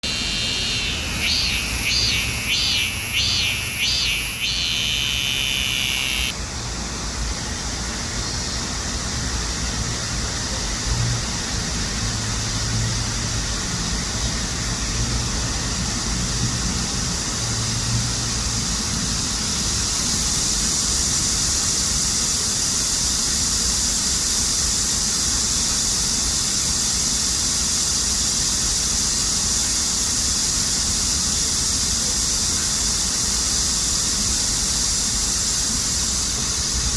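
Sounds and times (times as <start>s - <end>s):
close cicada pulsing song: 0.0s - 7.1s
cicada chorus: 0.0s - 7.2s.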